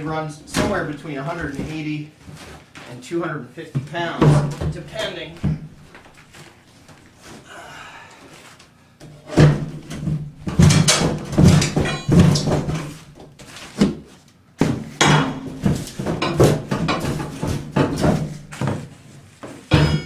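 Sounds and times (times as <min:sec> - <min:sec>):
bathtub knocking and scraping: 0:03.8 - 0:06.1, 0:09.2 - 0:18.9, 0:19.7 - 0:20.0.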